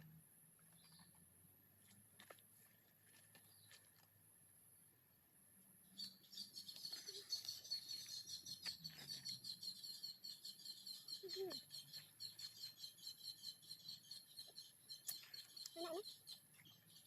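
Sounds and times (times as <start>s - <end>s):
low outdoor hum: 0.0s - 17.0s
bird rapid high chirps: 5.9s - 17.0s.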